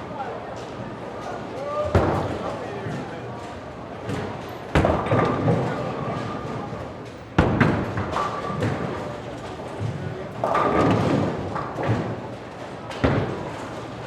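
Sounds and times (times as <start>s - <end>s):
murmur of voices: 0.0s - 7.3s
bowling pins clattering: 4.0s - 14.0s
bowling ball hitting pins: 4.1s - 6.7s, 7.4s - 12.3s.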